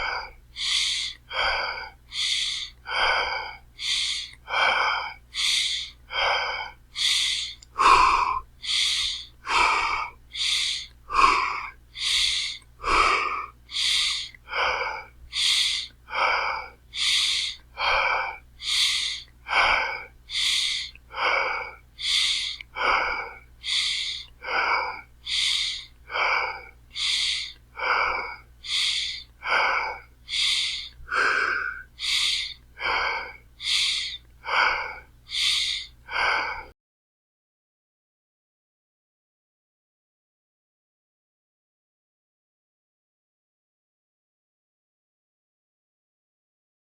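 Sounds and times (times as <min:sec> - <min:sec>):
person breathing hard: 0:00.0 - 0:36.8.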